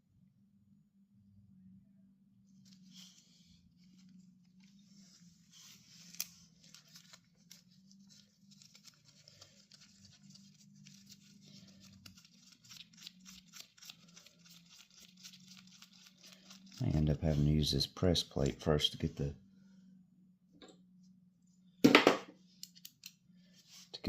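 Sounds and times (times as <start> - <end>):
faint low hum: 0.0 - 24.0.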